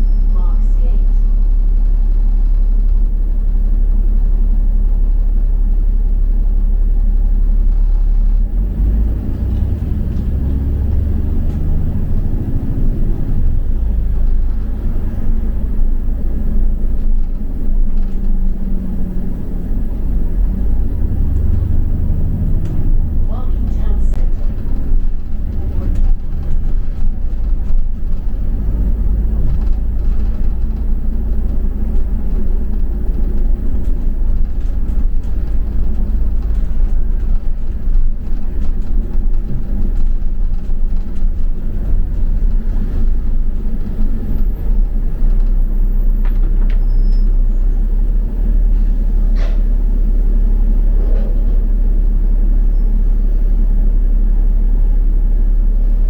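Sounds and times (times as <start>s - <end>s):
bus engine and road rumble: 0.0s - 56.0s
faint clicks and rattles: 22.6s - 45.6s.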